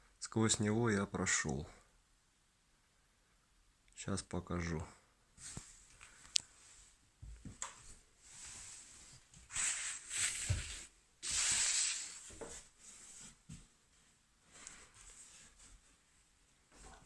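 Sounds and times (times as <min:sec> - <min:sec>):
rubbing and rustling: 0:05.4 - 0:17.0
hissing bursts: 0:11.2 - 0:12.3.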